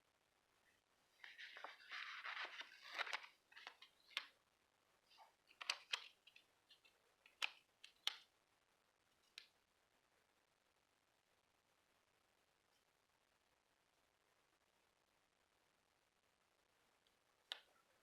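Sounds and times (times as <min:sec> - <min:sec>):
paper rustling: 0:01.2 - 0:04.3, 0:05.2 - 0:07.5.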